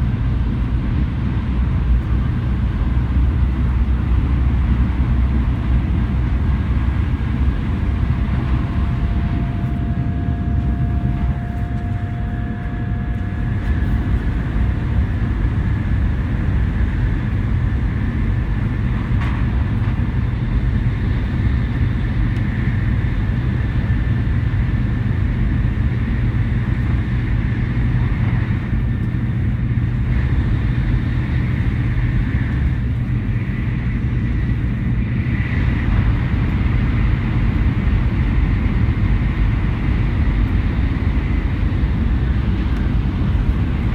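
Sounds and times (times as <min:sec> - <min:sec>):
train rumbling: 0:00.0 - 0:43.9
faint whine: 0:02.2 - 0:43.9.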